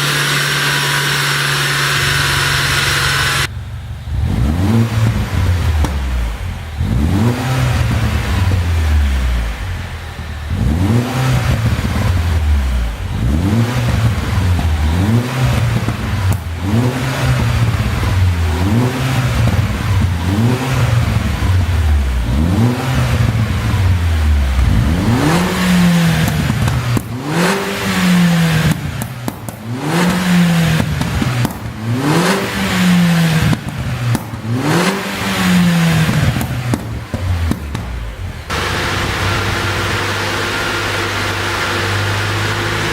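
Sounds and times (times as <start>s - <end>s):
car engine revving: 0.0s - 42.9s
exhaust pops and crackles: 0.0s - 42.9s.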